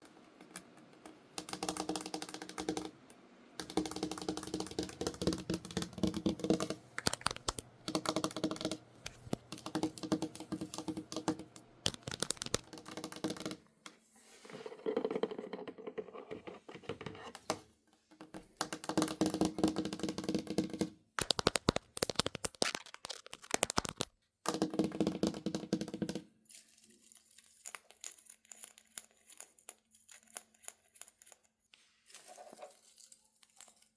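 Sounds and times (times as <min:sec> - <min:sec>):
fast tapping on objects: 0:00.4 - 0:03.0, 0:03.6 - 0:13.6, 0:18.2 - 0:26.2.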